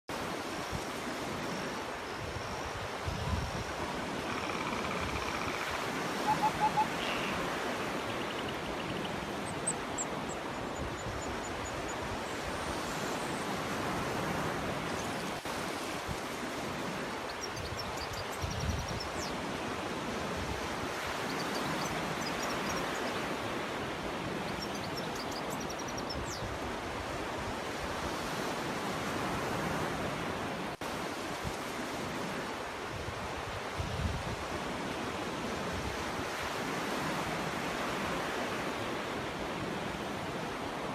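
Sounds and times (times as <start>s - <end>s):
high bird chirps: 4.3s - 10.4s
surf washing onto beach: 11.9s - 17.3s.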